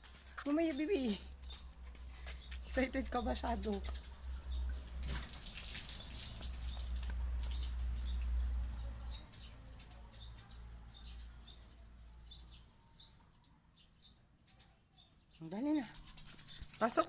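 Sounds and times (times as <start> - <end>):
small bird chirping: 5.9 - 17.0.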